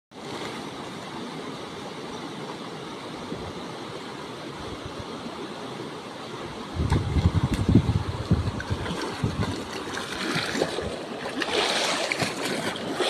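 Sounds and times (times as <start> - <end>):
gusty low rumble: 6.8 - 9.7.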